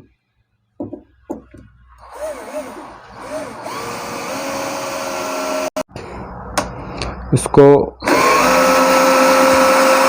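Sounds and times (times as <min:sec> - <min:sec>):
cordless drill driving screw into wood: 0:02.0 - 0:05.8, 0:08.0 - 0:10.0.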